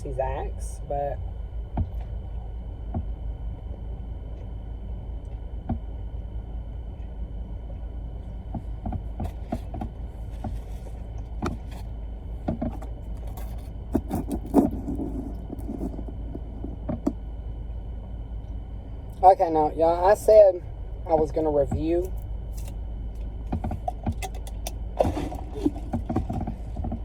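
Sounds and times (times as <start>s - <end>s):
car engine running: 8.2s - 18.4s, 19.1s - 27.0s.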